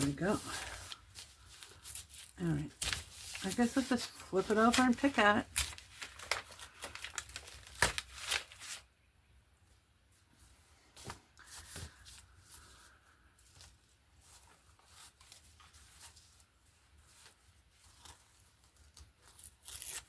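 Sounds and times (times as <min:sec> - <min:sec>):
paper peeling off cardboard: 0:18.8 - 0:20.0.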